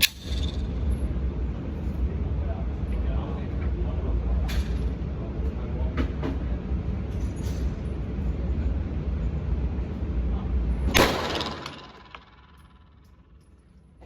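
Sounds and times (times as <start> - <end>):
pistol shot: 10.9 - 12.6.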